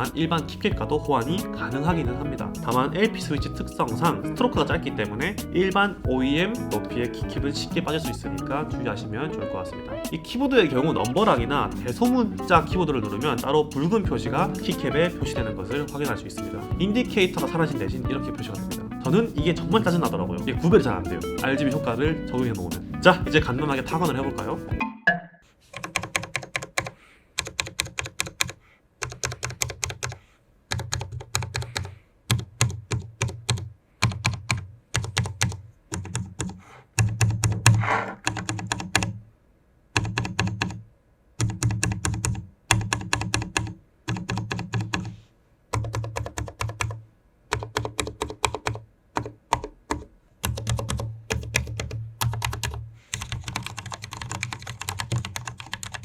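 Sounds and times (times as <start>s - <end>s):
mechanical keyboard typing: 25.7s - 39.2s, 40.0s - 40.8s, 41.4s - 56.0s.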